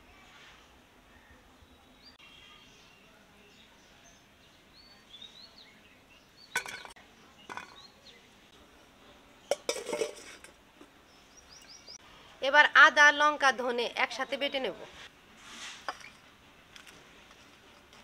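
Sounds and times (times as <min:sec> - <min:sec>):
faint bird chirps: 0:00.0 - 0:06.6
kitchen utensils clinking: 0:06.5 - 0:07.9, 0:09.5 - 0:10.6.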